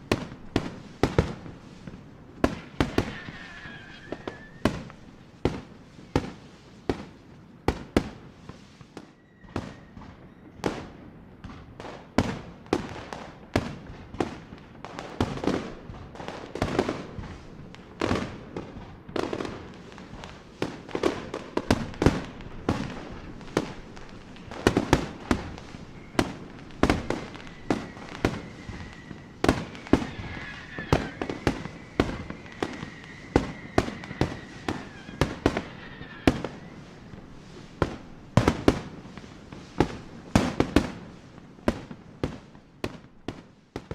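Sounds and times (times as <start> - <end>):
fireworks bangs with crackle: 0.0 - 43.9
thin firework whistle: 2.4 - 5.1, 8.9 - 10.7, 20.1 - 38.2.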